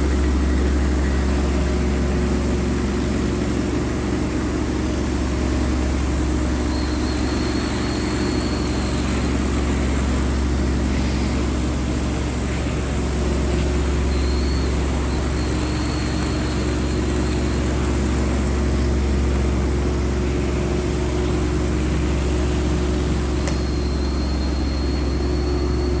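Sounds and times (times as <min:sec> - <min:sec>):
low engine drone: 0:00.0 - 0:26.0
thin high whistle: 0:05.9 - 0:12.0, 0:12.7 - 0:18.4, 0:21.4 - 0:26.0.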